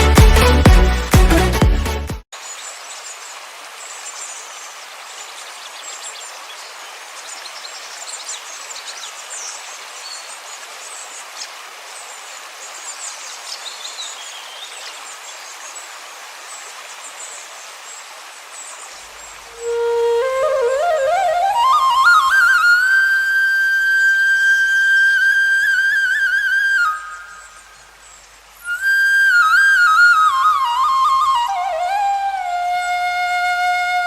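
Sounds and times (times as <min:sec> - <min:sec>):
electronic music: 0:00.0 - 0:02.2
running water: 0:02.4 - 0:34.0.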